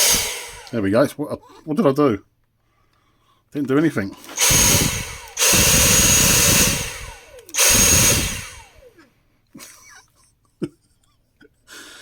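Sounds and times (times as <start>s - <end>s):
vacuum motor whining: 0.0s - 0.8s, 4.2s - 8.9s.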